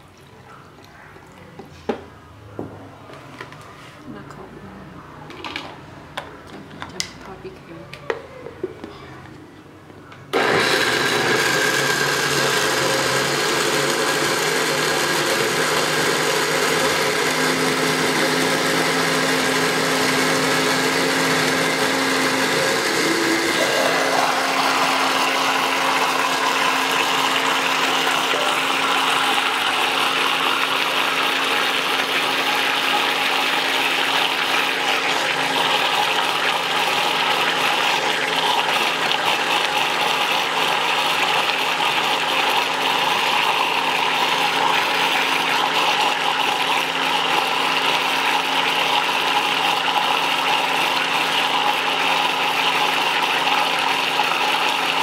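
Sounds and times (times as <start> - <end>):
electric blender running: 10.3 - 55.0.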